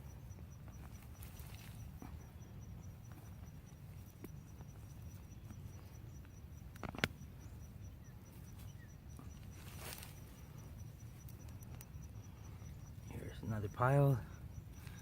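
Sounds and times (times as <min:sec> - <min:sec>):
rustling and scraping in soil: 0:00.0 - 0:07.6, 0:08.2 - 0:11.7.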